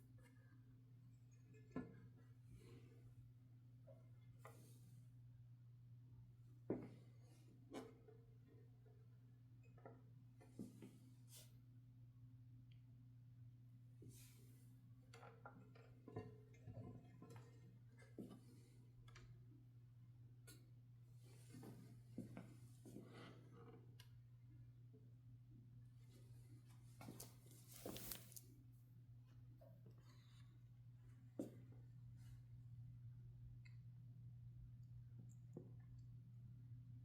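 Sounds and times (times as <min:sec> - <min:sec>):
faint clicks and rustles: 0:26.6 - 0:28.6.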